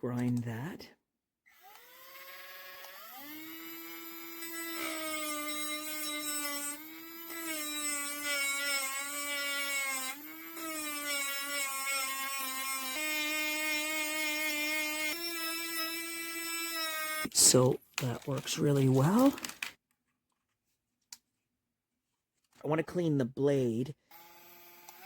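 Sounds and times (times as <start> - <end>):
rotary tool whining: 1.6 - 17.3, 24.1 - 25.0.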